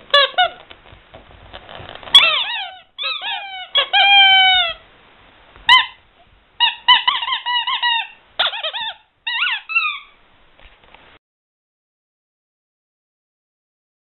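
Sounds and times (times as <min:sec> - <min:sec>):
rubber squeaky toy squeaking: 0:00.1 - 0:00.7, 0:01.6 - 0:04.8, 0:05.7 - 0:06.0, 0:06.6 - 0:10.2.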